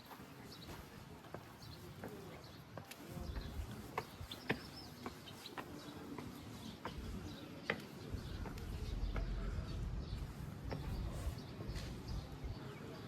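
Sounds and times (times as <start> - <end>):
low rumble: 8.3 - 11.1.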